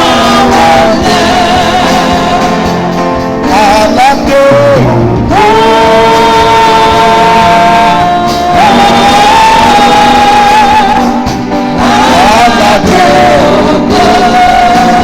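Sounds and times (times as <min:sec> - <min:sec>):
instrumental backing music: 0:00.0 - 0:15.0
person singing long notes: 0:03.5 - 0:11.2.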